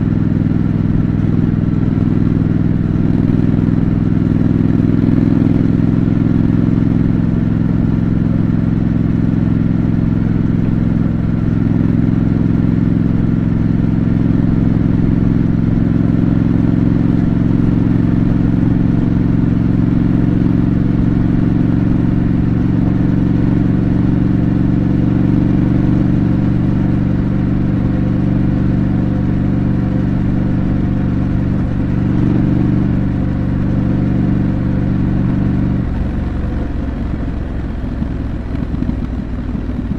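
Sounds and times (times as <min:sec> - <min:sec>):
motorcycle engine cruising: 0:00.0 - 0:39.9.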